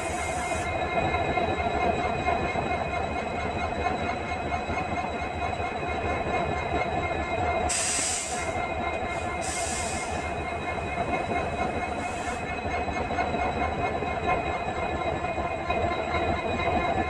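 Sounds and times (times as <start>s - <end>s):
locomotive diesel engine humming: 0.0s - 17.0s
air hiss: 7.7s - 8.5s.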